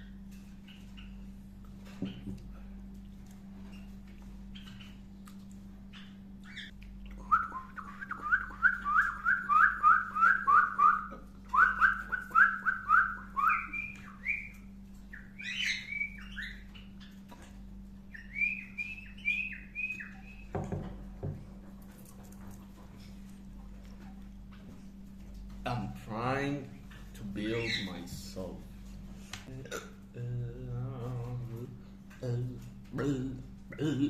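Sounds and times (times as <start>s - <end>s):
steady low hum: 0.0s - 34.0s
bird whistling: 6.4s - 16.8s, 18.1s - 20.6s, 27.6s - 28.0s.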